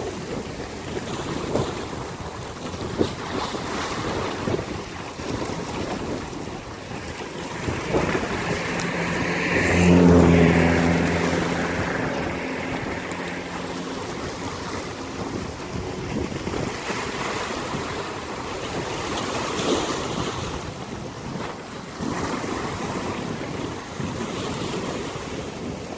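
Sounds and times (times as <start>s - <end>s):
waves breaking: 0.0s - 25.9s
wind buffeting microphone: 0.0s - 25.9s.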